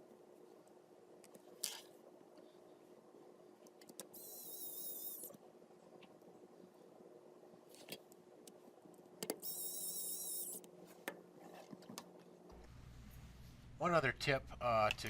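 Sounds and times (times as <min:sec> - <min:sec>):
high-pitched wavering squeak: 0:04.2 - 0:05.3, 0:09.4 - 0:10.6.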